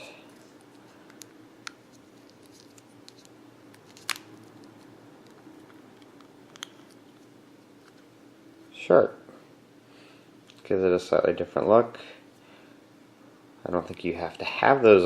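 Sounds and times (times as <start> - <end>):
steady low hum: 0.0 - 15.0
plastic earbuds rubbing and clicking: 0.6 - 8.0.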